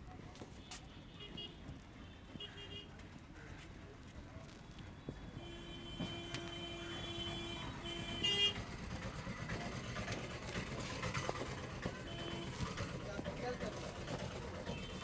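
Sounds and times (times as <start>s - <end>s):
traffic rumble: 0.0s - 15.0s
vehicle horns honking: 0.6s - 1.6s, 2.4s - 2.9s, 5.4s - 8.8s, 11.8s - 13.0s, 14.5s - 15.0s.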